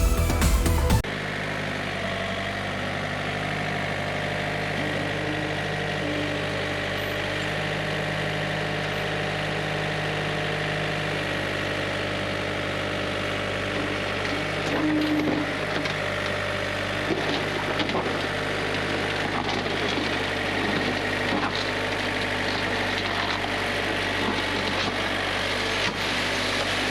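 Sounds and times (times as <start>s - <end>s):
background music: 0.0s - 1.0s
backhoe engine running: 0.0s - 26.9s.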